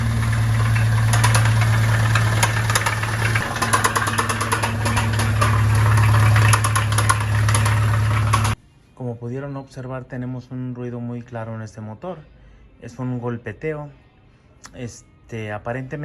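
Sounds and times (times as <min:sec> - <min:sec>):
car engine with rapid knocking: 0:00.0 - 0:08.6.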